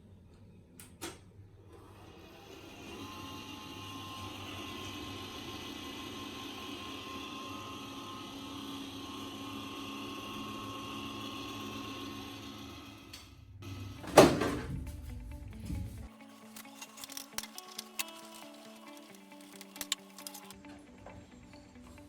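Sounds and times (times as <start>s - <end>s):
cooling fan whirring: 0.0s - 16.1s.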